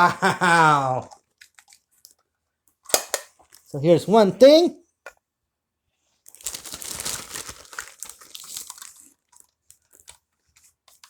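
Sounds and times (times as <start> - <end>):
packaging crinkling and rustling: 6.2 - 11.0.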